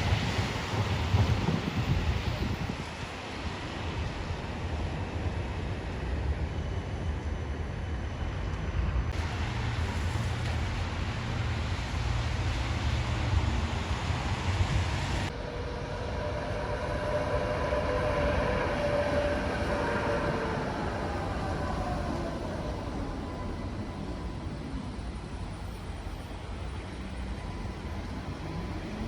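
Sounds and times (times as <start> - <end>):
rail vehicle rumbling by: 0.0 - 29.0
metallic whine of wheels: 9.1 - 29.0.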